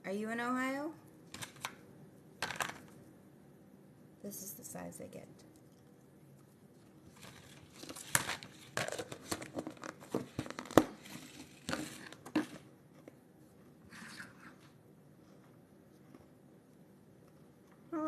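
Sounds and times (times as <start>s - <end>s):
crinkly packaging being torn: 7.1s - 12.5s.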